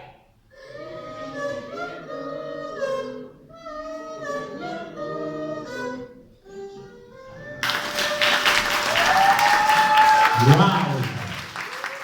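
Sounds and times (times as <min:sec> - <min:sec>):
applause: 0:07.6 - 0:12.0.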